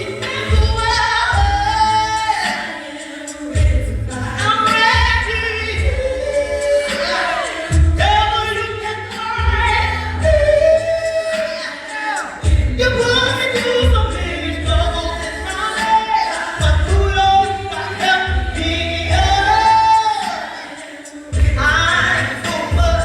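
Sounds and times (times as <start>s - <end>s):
gospel choir singing: 0.0s - 23.0s
band playing: 3.5s - 23.0s.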